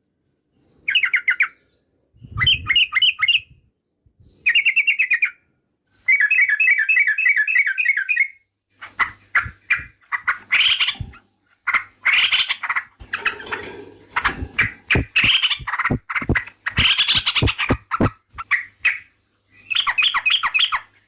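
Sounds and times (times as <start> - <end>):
harsh scratchy bird chattering: 6.2 - 21.0.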